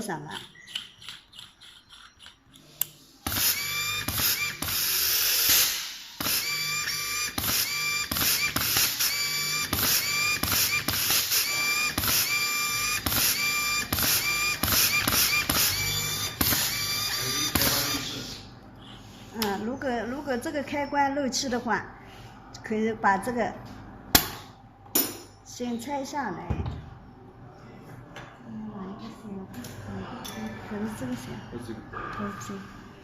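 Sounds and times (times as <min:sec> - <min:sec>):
pneumatic tool air hiss and whine: 0:03.2 - 0:18.5.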